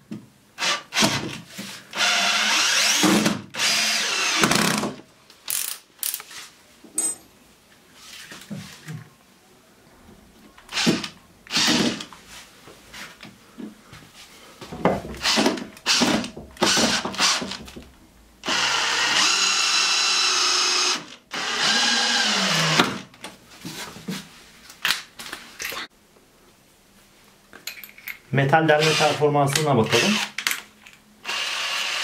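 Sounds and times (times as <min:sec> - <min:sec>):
drill driving screws into wood: 0:00.6 - 0:06.2, 0:10.7 - 0:12.1, 0:15.2 - 0:17.6, 0:18.4 - 0:23.1, 0:28.8 - 0:29.2, 0:29.9 - 0:30.4, 0:31.2 - 0:32.0.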